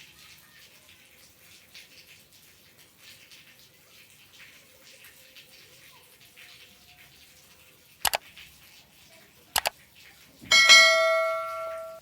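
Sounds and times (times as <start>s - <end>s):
ringing metallic clang: 10.5s - 12.0s.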